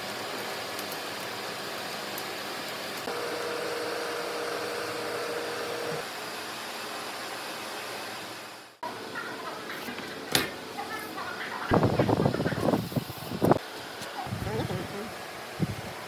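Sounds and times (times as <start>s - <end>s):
steady hum: 8.8s - 16.0s.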